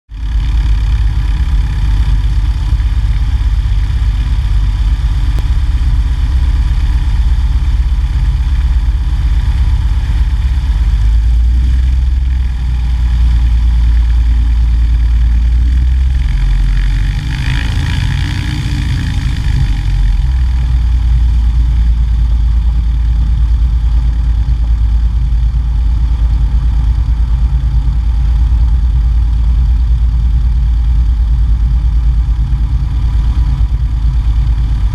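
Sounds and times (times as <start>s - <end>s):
propeller plane engine droning: 0.1s - 34.9s.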